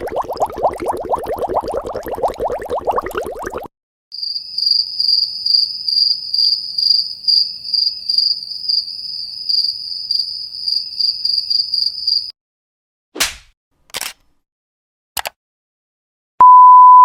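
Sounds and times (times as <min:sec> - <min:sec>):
short bubbling: 0:00.0 - 0:03.7
crickets chirping: 0:04.2 - 0:12.3.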